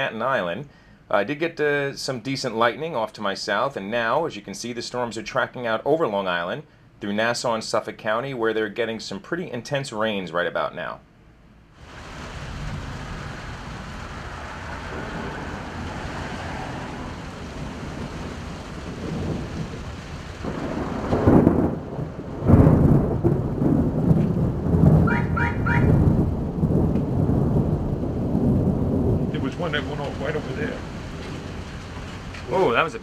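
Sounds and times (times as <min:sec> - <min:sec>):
heavy rain: 0:11.8 - 0:33.0
rolling thunder: 0:11.8 - 0:33.0.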